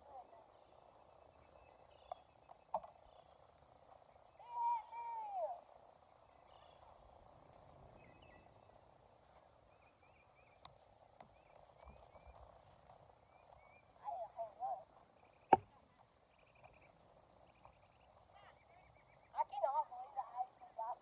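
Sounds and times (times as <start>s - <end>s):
small chirps: 0.1s - 19.4s
distant voice calling: 4.3s - 5.7s.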